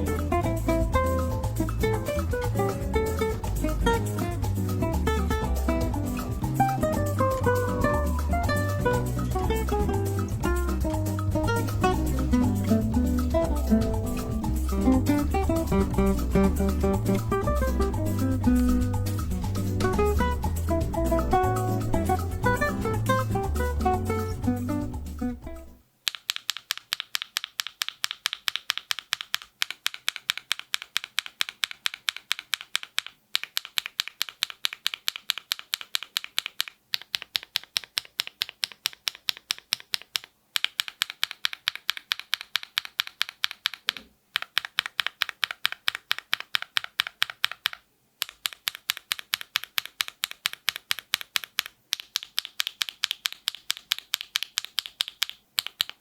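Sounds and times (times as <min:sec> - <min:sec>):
mechanical keyboard typing: 0:26.0 - 0:56.0.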